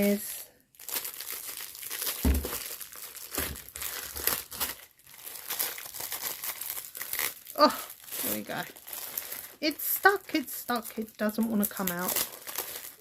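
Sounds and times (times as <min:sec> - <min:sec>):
plastic packaging crinkling: 0:00.0 - 0:13.0
soft thumps: 0:02.2 - 0:02.6.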